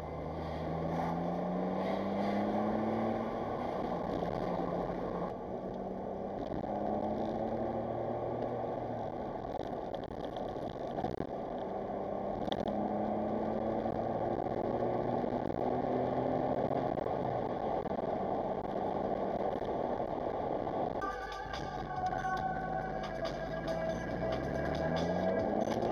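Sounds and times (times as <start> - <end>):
road and wind noise: 0.0 - 25.9
car engine running: 1.1 - 25.9
guitar music: 21.0 - 25.9.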